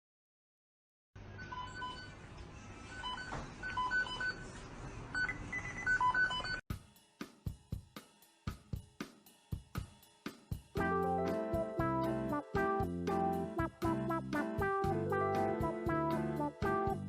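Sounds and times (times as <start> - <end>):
music with even drum beat: 6.7 - 17.0.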